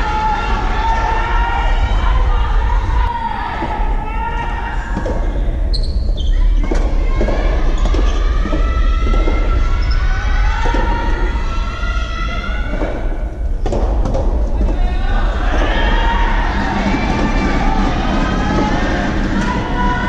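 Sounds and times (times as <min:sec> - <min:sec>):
long drawn-out shouts: 0:00.0 - 0:05.3, 0:14.6 - 0:20.0.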